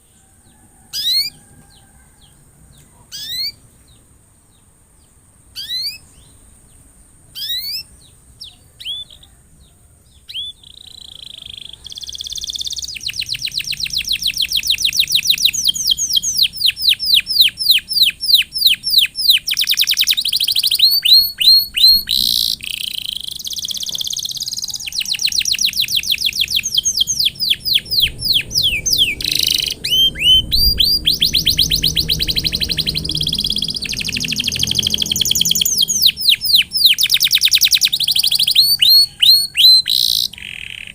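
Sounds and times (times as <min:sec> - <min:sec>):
canary singing: 0:00.0 - 0:40.9.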